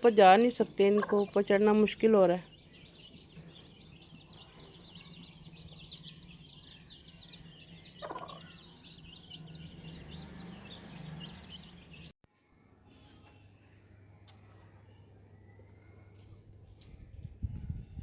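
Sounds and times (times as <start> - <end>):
chicks peeping: 2.5 - 12.1
hen calling: 7.9 - 8.6.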